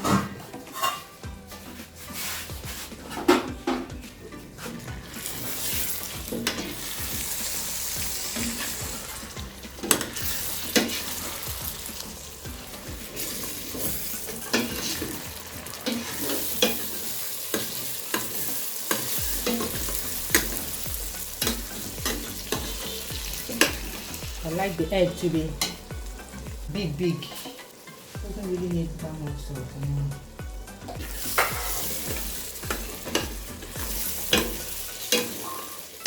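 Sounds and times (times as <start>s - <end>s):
stew sizzling in a pot: 0.0s - 36.0s
spoon stirring and clicking on pot: 5.2s - 24.4s, 30.9s - 35.8s.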